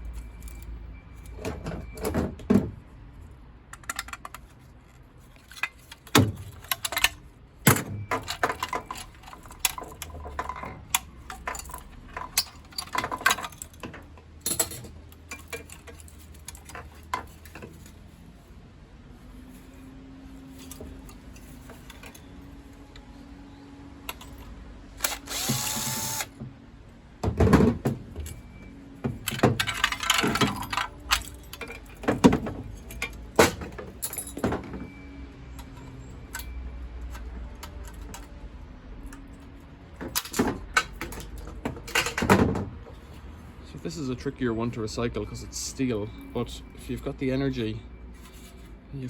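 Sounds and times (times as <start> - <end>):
small power tool burst: 25.0 - 26.3.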